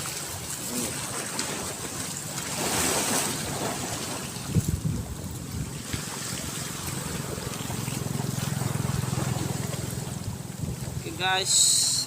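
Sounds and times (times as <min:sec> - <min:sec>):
rushing water: 0:00.0 - 0:12.0
wind on microphone: 0:02.6 - 0:11.5.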